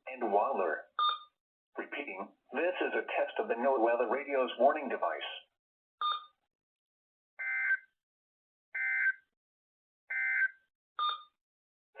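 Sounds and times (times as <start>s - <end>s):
short beep: 10.2s - 11.3s.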